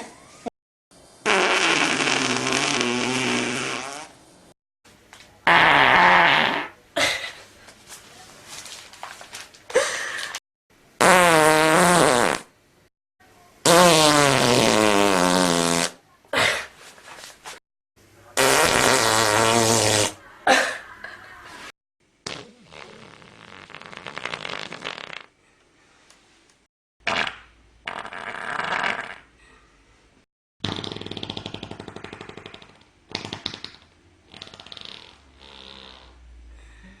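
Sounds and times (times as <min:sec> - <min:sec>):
loud buzzy farts: 0:01.2 - 0:04.3, 0:05.4 - 0:06.8, 0:11.0 - 0:12.5, 0:13.6 - 0:16.0, 0:18.4 - 0:20.2, 0:22.2 - 0:25.3, 0:27.0 - 0:29.3, 0:30.6 - 0:36.2.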